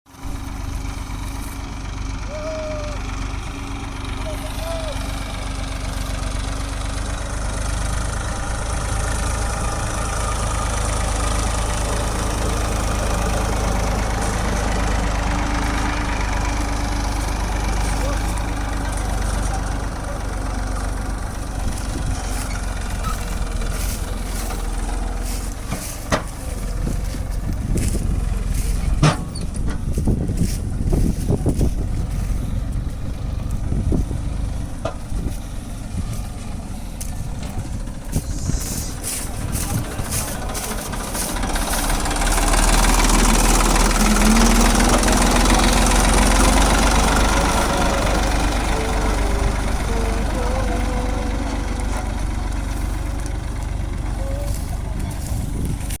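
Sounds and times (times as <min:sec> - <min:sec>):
engine rumbling: 0:00.1 - 0:56.0.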